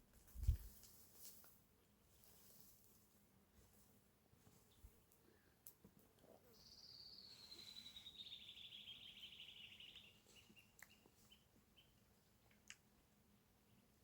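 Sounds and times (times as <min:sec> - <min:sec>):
bird chirps: 0:06.4 - 0:12.0
bird trill: 0:06.5 - 0:11.9.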